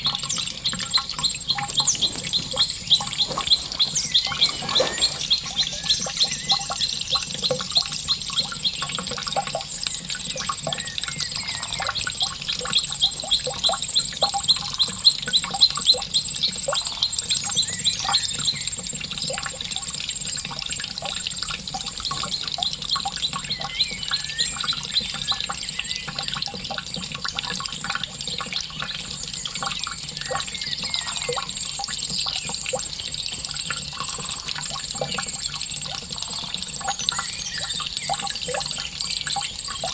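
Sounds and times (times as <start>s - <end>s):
small bird chirping: 0.0s - 18.8s, 22.1s - 26.7s, 28.5s - 31.6s
water trickling and dripping: 0.0s - 39.9s.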